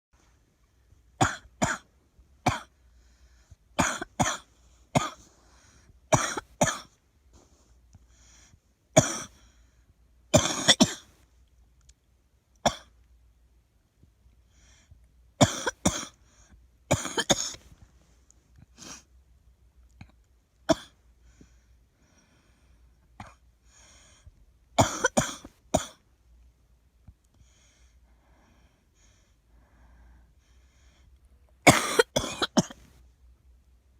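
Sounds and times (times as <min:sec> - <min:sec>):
girl coughing: 0:01.2 - 0:01.8, 0:03.8 - 0:04.4, 0:05.0 - 0:05.2, 0:06.1 - 0:06.9, 0:09.0 - 0:09.3, 0:10.4 - 0:11.0, 0:15.4 - 0:16.2, 0:16.9 - 0:17.6, 0:20.7 - 0:21.0, 0:24.8 - 0:26.0, 0:31.7 - 0:32.8.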